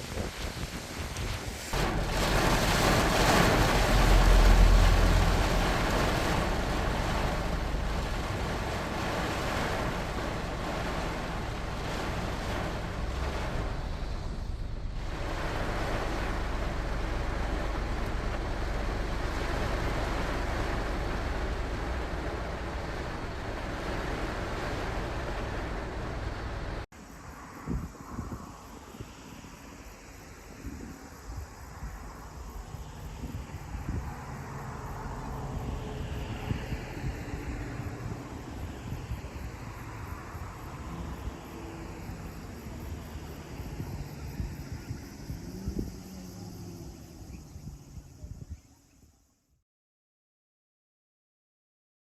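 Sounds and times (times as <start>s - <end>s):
heavy rain rushing: 0.0s - 26.9s, 33.7s - 47.8s
tyres on wet road: 0.0s - 27.6s, 32.0s - 48.0s.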